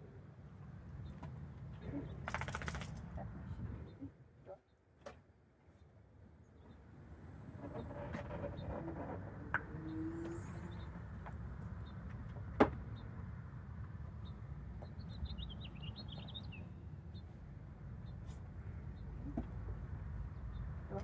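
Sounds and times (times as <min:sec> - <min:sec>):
small birds chirping: 0:14.2 - 0:17.4.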